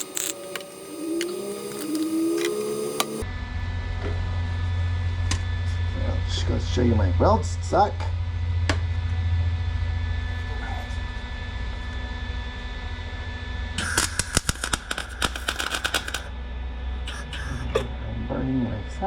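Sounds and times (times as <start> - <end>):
welder humming: 0.0 - 3.2, 13.8 - 16.3, 17.0 - 18.0
welding arc crackling: 0.0 - 3.2, 13.8 - 16.3.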